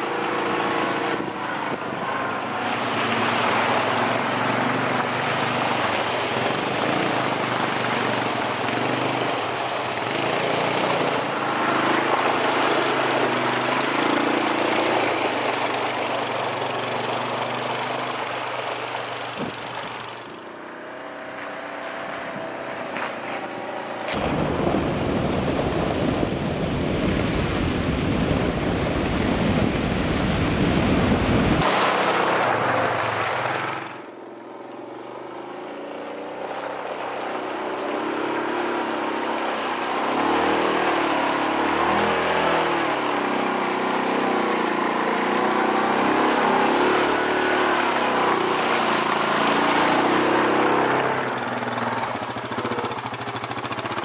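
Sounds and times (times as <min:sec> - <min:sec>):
atv engine running: 0:00.0 - 0:24.2, 0:31.6 - 0:54.0
wind buffeting microphone: 0:00.4 - 0:09.2.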